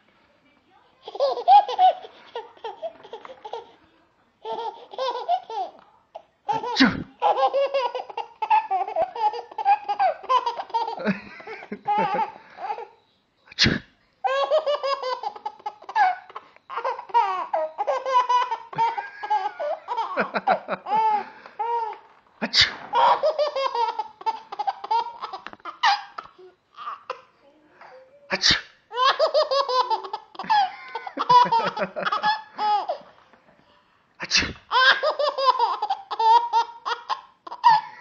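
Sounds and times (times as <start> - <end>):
baby laughing: 1.0 - 3.8, 4.4 - 5.8, 6.5 - 13.0, 14.2 - 27.3, 28.9 - 33.1, 34.7 - 38.0
man sneezing: 6.8 - 7.1, 22.4 - 22.9, 28.3 - 28.7, 34.2 - 34.6.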